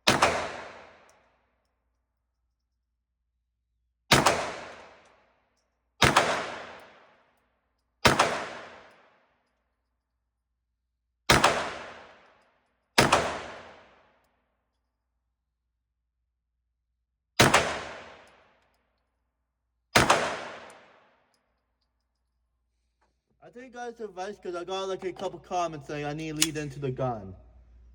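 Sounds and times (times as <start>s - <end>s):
pistol shots: 0.0s - 1.1s, 4.1s - 5.1s, 6.0s - 7.2s, 8.0s - 9.1s, 11.3s - 12.3s, 13.0s - 14.0s, 17.4s - 18.3s, 20.0s - 21.0s.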